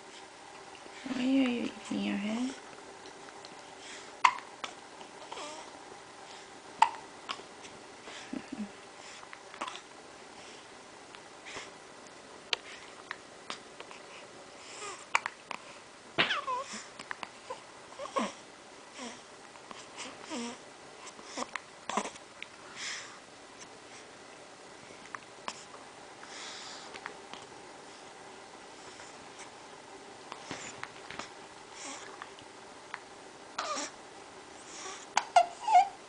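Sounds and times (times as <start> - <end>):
baby hiccuping: 4.2 - 4.5, 6.8 - 7.4, 33.6 - 33.9
baby cooing and grunting: 5.2 - 5.7, 16.2 - 16.9, 17.5 - 18.4, 20.2 - 20.6, 21.4 - 22.2, 33.6 - 34.0.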